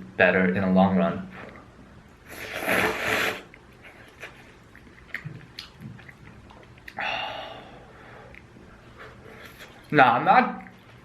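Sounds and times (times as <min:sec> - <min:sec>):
loud noodle slurp: 0:02.3 - 0:03.6
chewing with mouth clicks: 0:03.4 - 0:07.1, 0:08.2 - 0:11.0.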